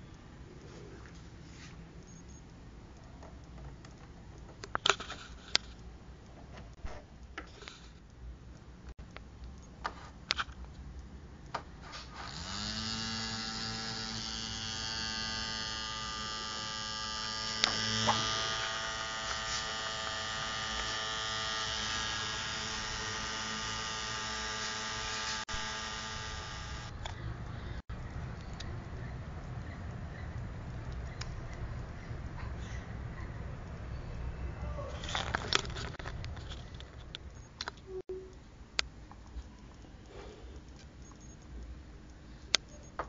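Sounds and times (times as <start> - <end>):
small fan motor whirring: 12.1 - 27.8.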